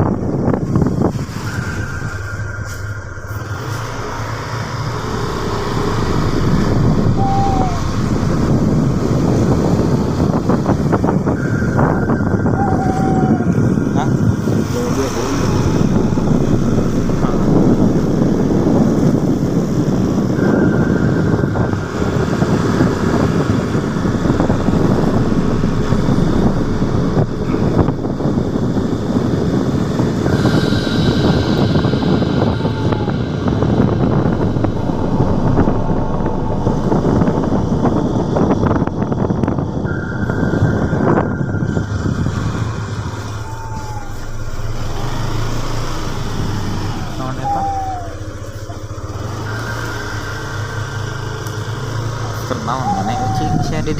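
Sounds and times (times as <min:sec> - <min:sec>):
motorcycle engine running: 0:00.0 - 0:53.9
vehicle low rumble: 0:00.0 - 0:53.9
wind buffeting microphone: 0:00.0 - 0:53.9
high falling cry: 0:06.4 - 0:08.4, 0:11.2 - 0:16.4, 0:30.3 - 0:37.4, 0:40.1 - 0:51.0, 0:52.4 - 0:53.9.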